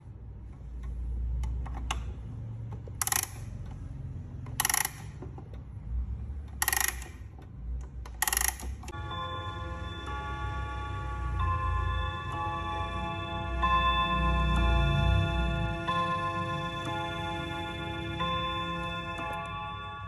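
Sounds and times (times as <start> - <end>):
clock ticking: 2.7 - 5.6, 6.3 - 20.0
clock mechanism rasping: 2.7 - 20.0
clock chime ringing: 8.2 - 20.0.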